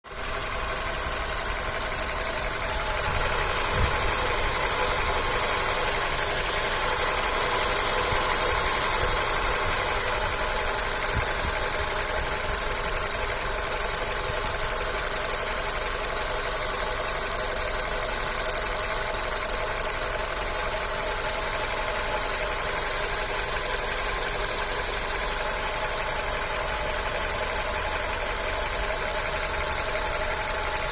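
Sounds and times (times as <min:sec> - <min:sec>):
engine idling: 0:00.0 - 0:30.9
high-pitched whistle: 0:01.4 - 0:15.2, 0:19.3 - 0:24.7, 0:25.3 - 0:30.9.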